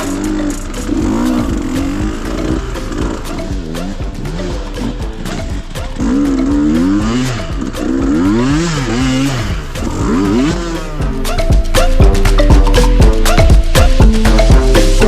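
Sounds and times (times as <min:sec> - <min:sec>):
motorcycle engine revving: 0:00.0 - 0:11.3.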